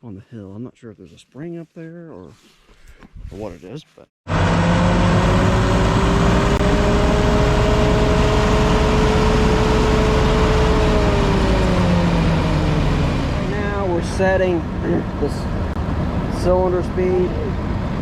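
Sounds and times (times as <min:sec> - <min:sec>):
combine harvester running: 0:04.3 - 0:18.0.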